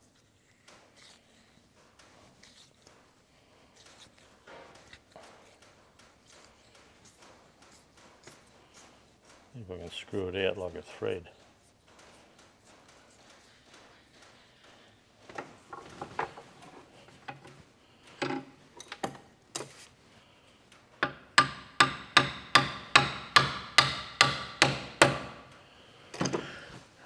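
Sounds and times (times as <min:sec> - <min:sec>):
hammer striking metal: 0:21.0 - 0:25.5.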